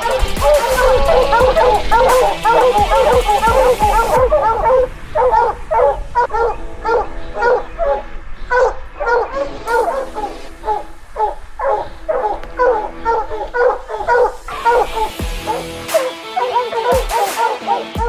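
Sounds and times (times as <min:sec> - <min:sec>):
hounds barking and baying: 0:00.0 - 0:18.0.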